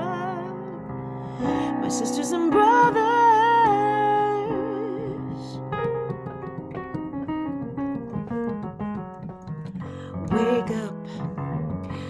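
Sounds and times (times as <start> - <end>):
woman singing with vibrato: 0.0 - 0.8, 1.4 - 5.6, 10.1 - 11.3
electric piano chords: 0.0 - 12.0.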